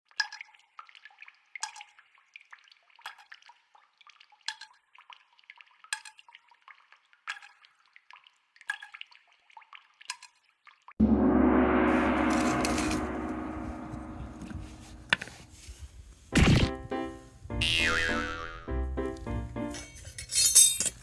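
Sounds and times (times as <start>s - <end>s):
water dripping plinks: 0.1s - 11.0s.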